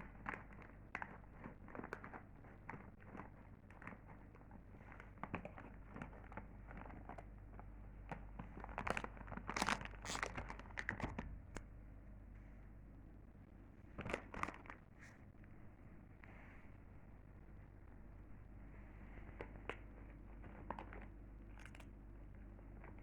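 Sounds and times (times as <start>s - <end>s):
bag of chips crinkling: 8.5s - 11.2s.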